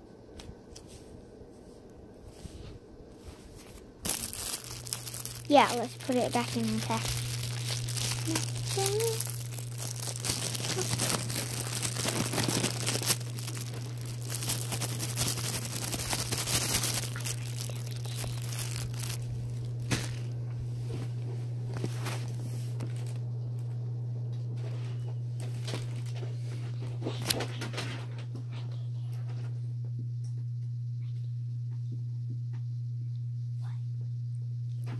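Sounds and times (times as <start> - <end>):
steady low hum: 0.0 - 34.9
plastic bag crinkling: 4.0 - 20.4, 25.4 - 26.3.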